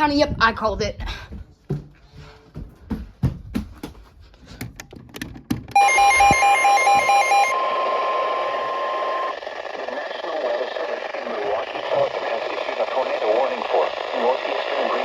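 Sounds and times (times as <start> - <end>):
fast beeping alert: 5.8 - 7.8
loud steady alarm tone: 5.8 - 15.0.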